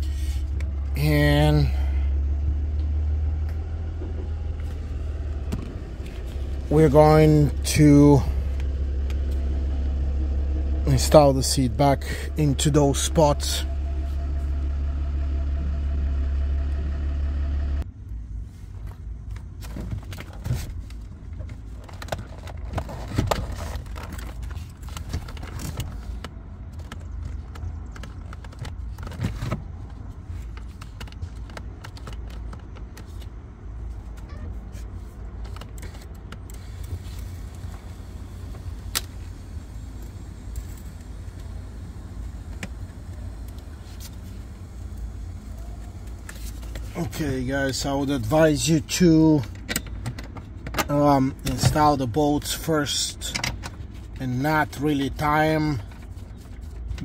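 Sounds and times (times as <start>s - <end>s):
louder low hum: 0.0s - 18.4s
low steady hum: 0.0s - 57.0s.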